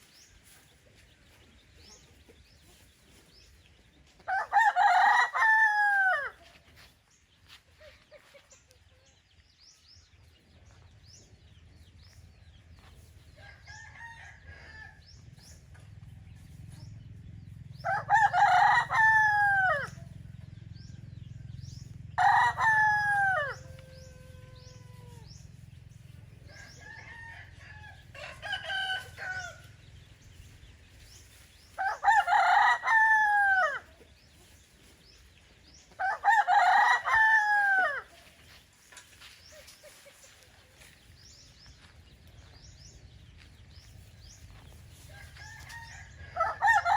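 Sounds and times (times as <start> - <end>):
roosters crowing: 4.2 - 6.4, 13.3 - 15.6, 16.3 - 30.5, 31.1 - 34.2, 35.7 - 38.3, 43.8 - 46.9.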